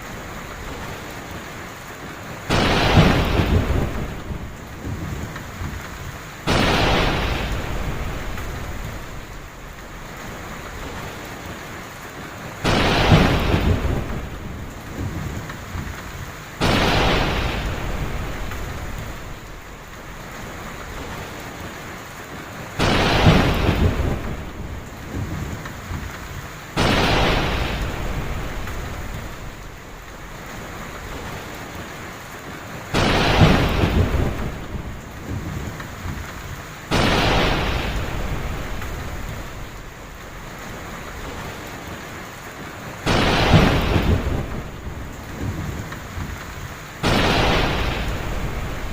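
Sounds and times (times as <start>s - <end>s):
heavy rain falling: 0.0s - 48.9s
thunderclaps cracking and rumbling: 2.0s - 48.9s.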